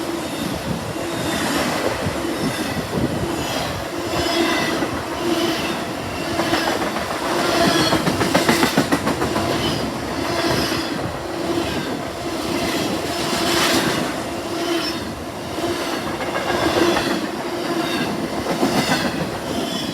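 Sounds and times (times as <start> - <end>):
train wheels clattering over rail joints: 1.7 - 15.0.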